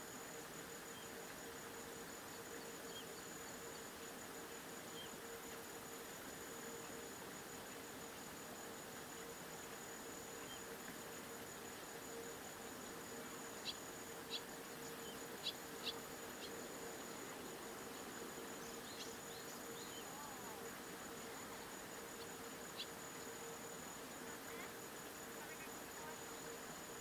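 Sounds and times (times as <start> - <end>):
outdoor background noise: 0.0 - 27.0
high insect-like trill: 7.8 - 27.0.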